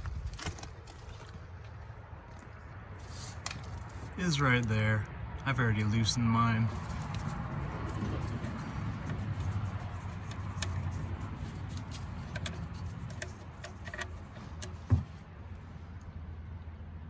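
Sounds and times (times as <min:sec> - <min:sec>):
dull thump: 0:13.8 - 0:15.2.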